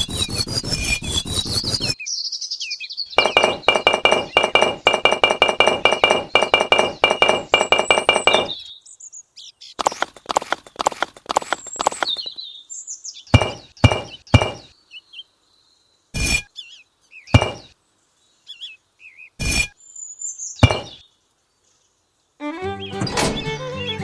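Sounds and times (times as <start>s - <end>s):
high bird-like chirps: 0.0s - 9.0s, 9.7s - 12.6s, 13.2s - 14.8s, 16.2s - 17.7s, 19.4s - 21.1s
sharp ringing clinking knocks: 3.2s - 8.6s, 13.4s - 14.7s, 17.4s - 17.7s, 20.6s - 21.0s.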